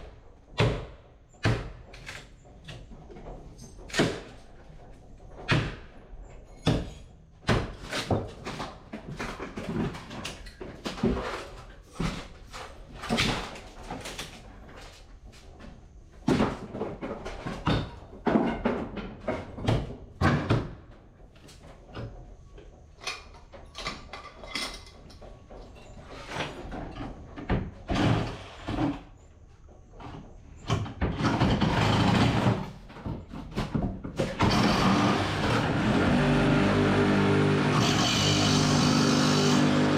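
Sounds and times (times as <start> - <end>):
demolition knocks and bangs: 0.0 - 11.3, 16.2 - 21.0.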